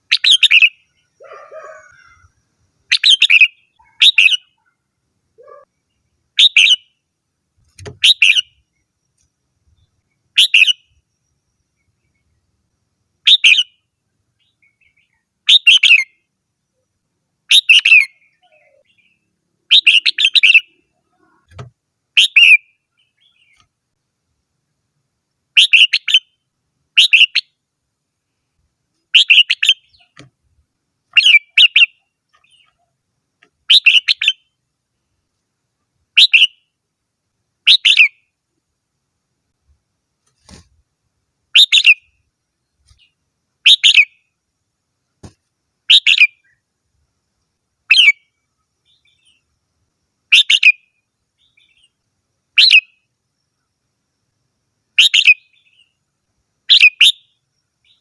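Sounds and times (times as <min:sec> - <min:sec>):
bird singing short bright phrases: 0:00.0 - 0:04.8, 0:05.4 - 0:07.0, 0:07.6 - 0:12.4, 0:13.2 - 0:16.8, 0:17.5 - 0:23.7, 0:25.5 - 0:27.6, 0:29.1 - 0:30.3, 0:31.1 - 0:33.0, 0:33.6 - 0:34.6, 0:36.1 - 0:36.7, 0:37.6 - 0:38.3, 0:41.5 - 0:44.3, 0:45.9 - 0:46.7, 0:47.9 - 0:49.5, 0:50.3 - 0:52.0, 0:52.6 - 0:53.1, 0:55.0 - 0:56.0, 0:56.7 - 0:58.0.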